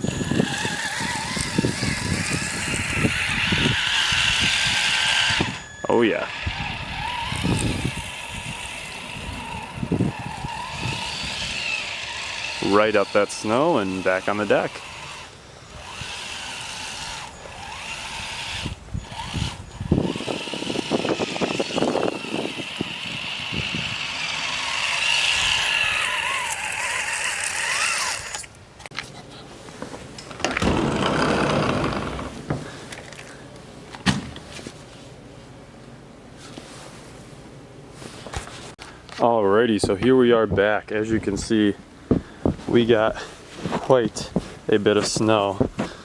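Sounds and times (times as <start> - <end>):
electric motor whine: 0.0 - 28.5
handling noises: 24.3 - 46.0.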